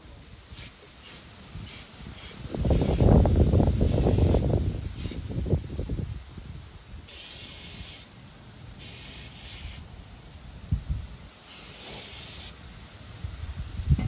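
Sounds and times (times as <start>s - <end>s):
aerosol spray bursts: 0.2s - 5.4s, 7.0s - 10.2s, 11.2s - 12.9s.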